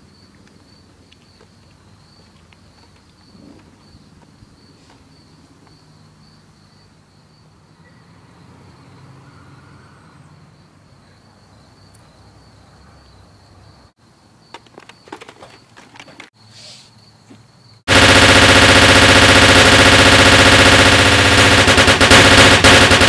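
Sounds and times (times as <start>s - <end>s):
crickets chirping: 0.0s - 17.9s
sharp clicks and knocks: 14.5s - 16.3s.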